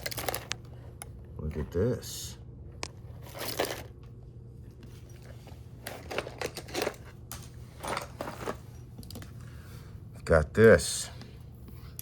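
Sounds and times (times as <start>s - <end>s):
low electrical hum: 0.0s - 12.0s
rustling and crinkling handling: 2.9s - 9.4s.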